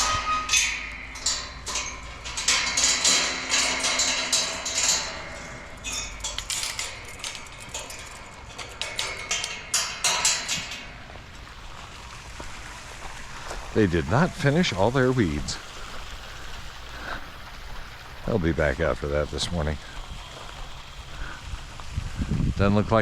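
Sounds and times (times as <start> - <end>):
clattering knocks and clicks: 0.0 - 18.3.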